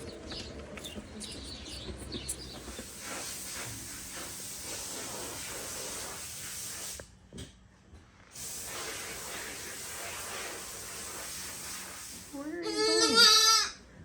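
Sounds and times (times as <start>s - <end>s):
steady hissing noise: 2.4s - 7.2s, 8.3s - 12.7s.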